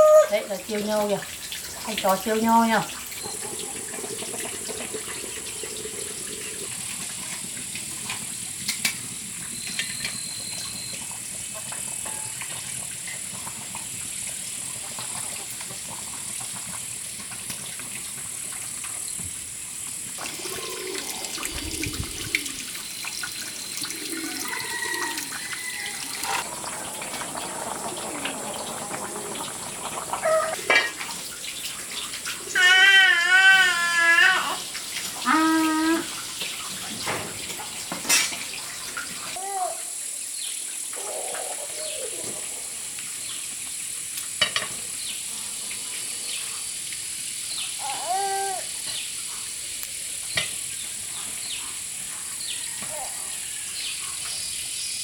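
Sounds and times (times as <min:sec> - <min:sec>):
water running: 0:00.0 - 0:52.0
faint animal whining calls: 0:30.1 - 0:30.6, 0:41.0 - 0:42.8, 0:47.8 - 0:48.8.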